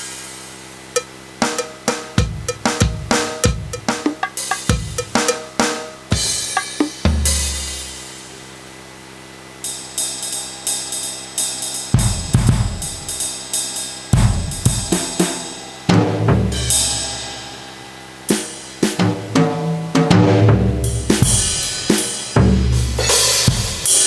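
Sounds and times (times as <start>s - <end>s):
electronic drum hits: 1.0s - 8.0s, 11.9s - 13.3s, 14.1s - 23.8s
cymbal crash with low boom: 11.5s - 19.4s.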